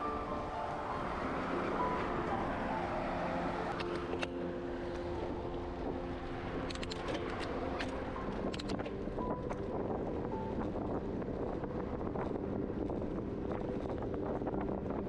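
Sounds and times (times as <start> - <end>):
wind on microphone: 0.0 - 15.0
light clicks: 6.7 - 8.9.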